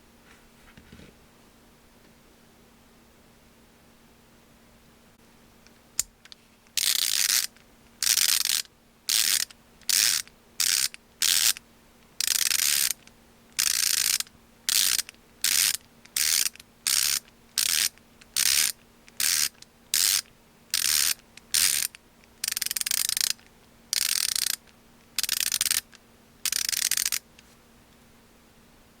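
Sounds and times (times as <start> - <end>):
ratchet clicking: 6.8 - 11.6, 12.2 - 13.0, 13.6 - 27.2.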